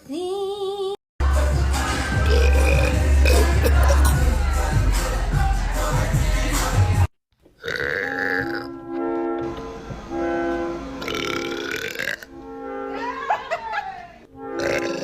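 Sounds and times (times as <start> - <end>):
loud burping: 2.0 - 4.4, 7.6 - 8.8, 11.0 - 12.4, 14.6 - 15.0.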